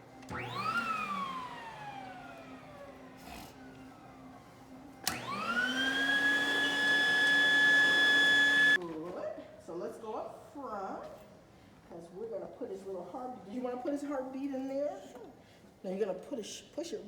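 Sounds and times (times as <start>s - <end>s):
blower motor whine: 0.0s - 8.8s
switch click: 5.0s - 5.3s.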